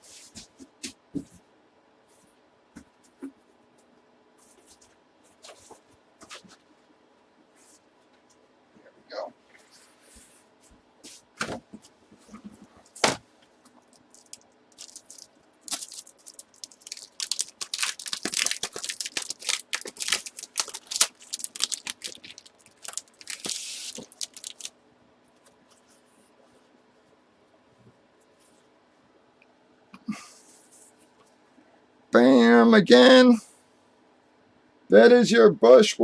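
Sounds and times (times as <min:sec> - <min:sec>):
packaging tearing and crinkling: 0:13.8 - 0:24.7.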